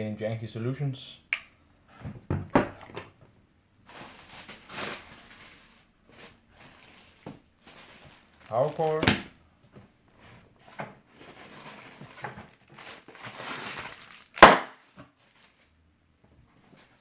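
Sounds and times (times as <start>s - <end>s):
packaging rustling: 3.9s - 9.2s, 11.2s - 15.7s.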